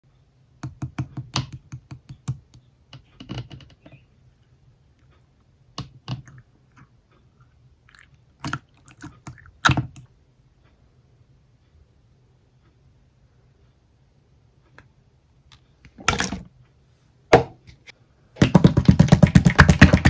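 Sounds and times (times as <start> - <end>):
slime squished wet pops: 8.4 - 10.0, 18.4 - 20.0.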